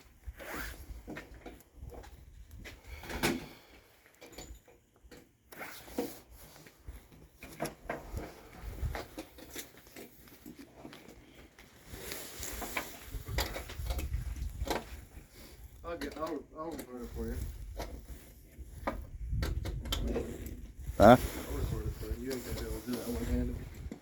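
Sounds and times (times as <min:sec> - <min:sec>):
wind rumble on microphone: 0:01.8 - 0:03.0, 0:08.0 - 0:09.2, 0:13.0 - 0:15.9, 0:17.0 - 0:24.0.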